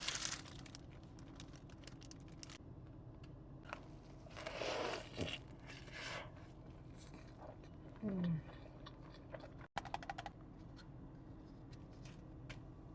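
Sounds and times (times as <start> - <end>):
food packaging crinkling: 0.0 - 2.6
packaging tearing: 0.0 - 2.6.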